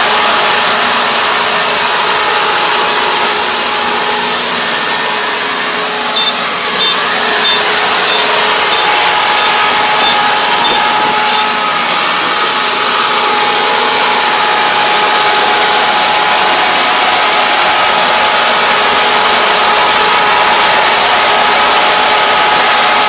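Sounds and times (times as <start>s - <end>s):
combine harvester running: 0.0s - 23.0s
high machine whine: 0.0s - 23.0s.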